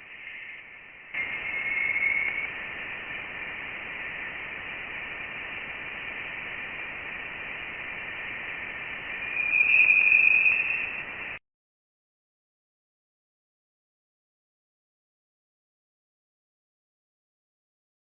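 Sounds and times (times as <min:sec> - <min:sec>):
radio-like hiss: 0:00.0 - 0:11.4
faint high tones: 0:00.1 - 0:11.4.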